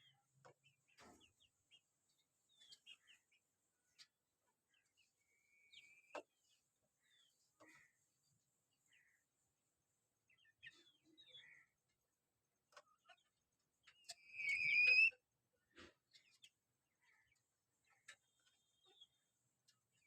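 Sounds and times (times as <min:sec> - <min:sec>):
faint bird chirps and clicks: 0:00.0 - 0:08.0, 0:08.9 - 0:09.2, 0:10.3 - 0:20.0
rising bird call: 0:14.1 - 0:15.2.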